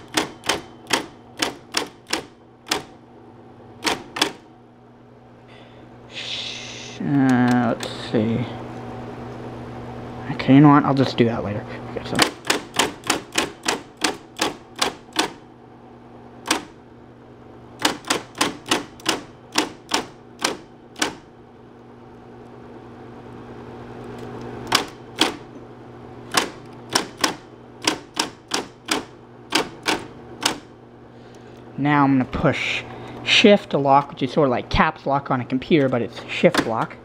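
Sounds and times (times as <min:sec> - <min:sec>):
electric typewriter key strikes: 0:00.0 - 0:03.0, 0:03.8 - 0:04.4, 0:12.1 - 0:15.4, 0:16.4 - 0:16.8, 0:17.8 - 0:21.3, 0:24.7 - 0:25.4, 0:26.3 - 0:30.7
typewriter motor hum: 0:00.0 - 0:03.0, 0:03.8 - 0:04.5, 0:12.0 - 0:15.4, 0:16.4 - 0:16.8, 0:17.8 - 0:21.4, 0:24.0 - 0:25.6, 0:26.2 - 0:31.6.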